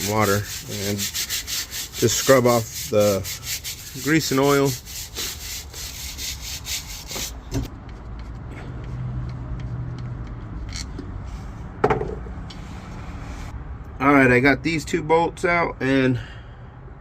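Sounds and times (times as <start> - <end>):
scrubbing metal parts by hand: 0.0 - 11.0.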